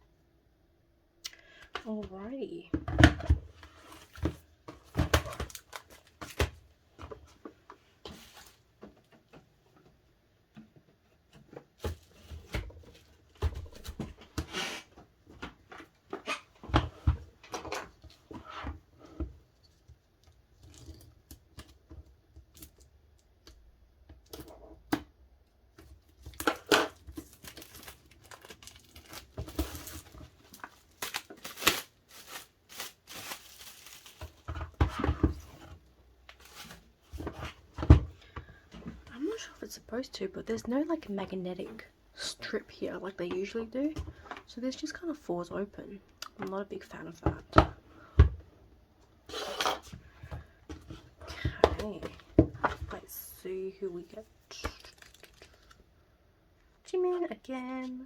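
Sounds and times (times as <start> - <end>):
packaging tearing and crinkling: 26.3 - 34.5, 54.7 - 55.8.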